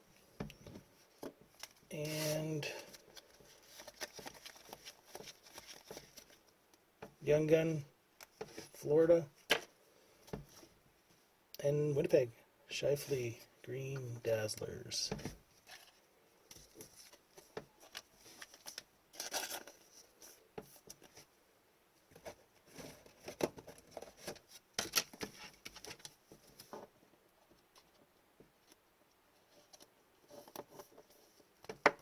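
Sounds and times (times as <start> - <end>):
trading cards and wrappers rustling: 1.5 - 6.5, 14.0 - 21.3.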